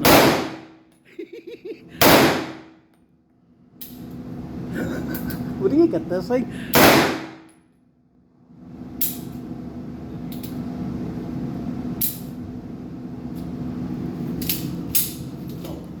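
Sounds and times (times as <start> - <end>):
distant gunshots: 0.0 - 0.7, 2.0 - 2.7, 6.8 - 7.4
shooting range hum: 0.0 - 16.0.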